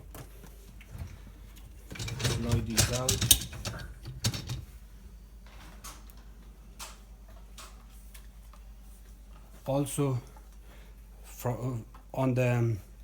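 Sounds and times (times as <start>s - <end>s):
dishwasher racks sliding on rails: 1.8s - 4.7s.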